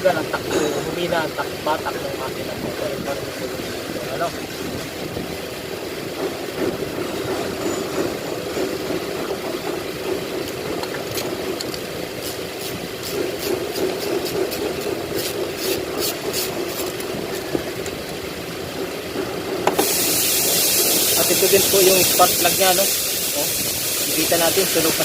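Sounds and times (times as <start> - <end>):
mechanical hum: 0.0 - 25.0
short hissing spray bursts: 19.8 - 25.0.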